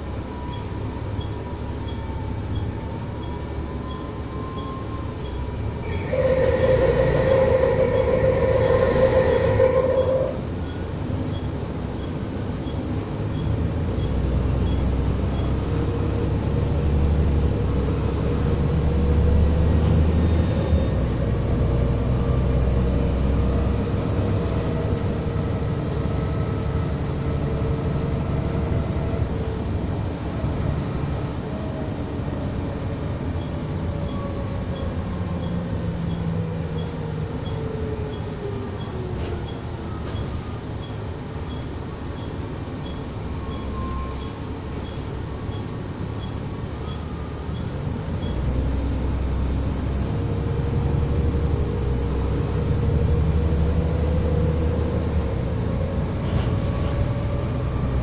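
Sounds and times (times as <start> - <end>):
bus engine rumble: 0.0 - 58.0
wavering whining tone: 5.8 - 10.5.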